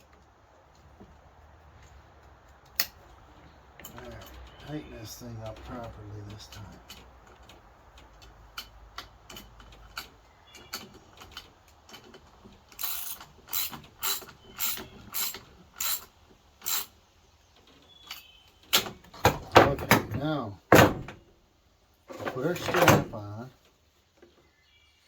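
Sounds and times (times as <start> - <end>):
ratchet tool clicking: 12.7 - 17.0.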